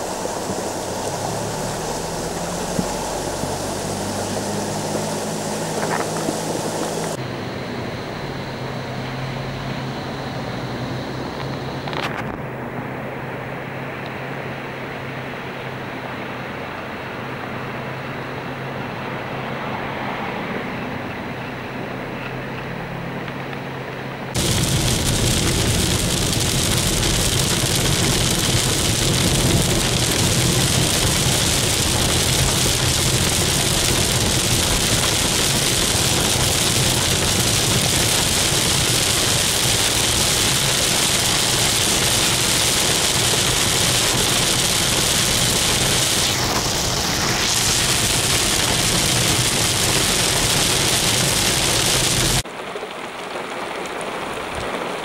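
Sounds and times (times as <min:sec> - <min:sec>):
heavy rain pouring: 0:00.0 - 0:07.2, 0:24.3 - 0:55.0.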